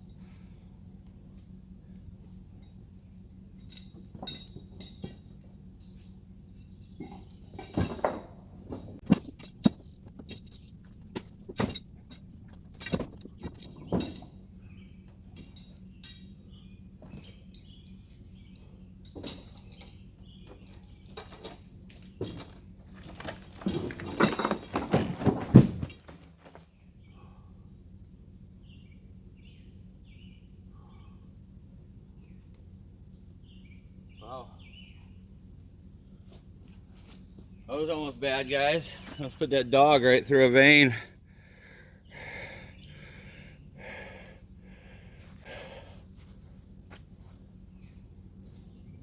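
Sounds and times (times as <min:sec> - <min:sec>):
steady low hum: 0:00.0 - 0:49.0
metal clinks and knocks: 0:03.5 - 0:14.6, 0:15.2 - 0:17.8, 0:18.5 - 0:26.4
metal clattering: 0:06.7 - 0:14.5, 0:19.1 - 0:26.5.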